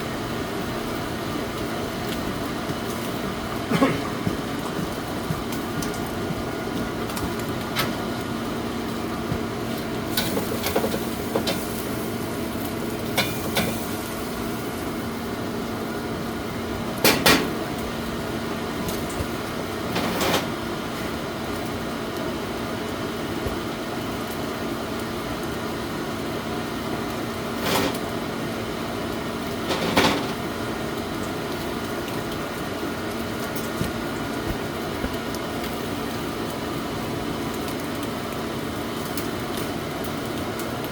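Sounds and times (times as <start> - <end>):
steady mechanical hum: 0.0 - 40.9.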